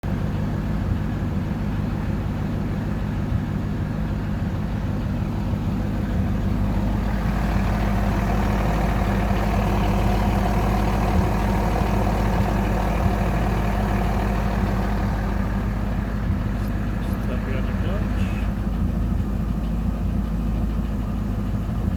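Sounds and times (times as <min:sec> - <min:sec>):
car engine idling: 0:00.0 - 0:21.9
higher engine tone: 0:05.1 - 0:21.9.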